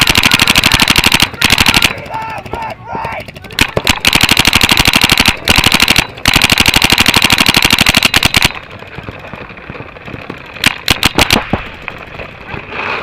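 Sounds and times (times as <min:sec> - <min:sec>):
paintball marker firing: 0:00.0 - 0:02.0, 0:03.5 - 0:08.7, 0:10.6 - 0:12.0.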